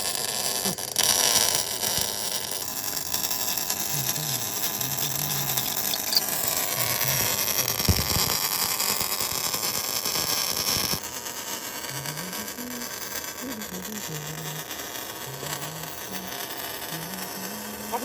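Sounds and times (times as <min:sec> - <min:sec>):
faint wavering hum: 0:10.8 - 0:18.0.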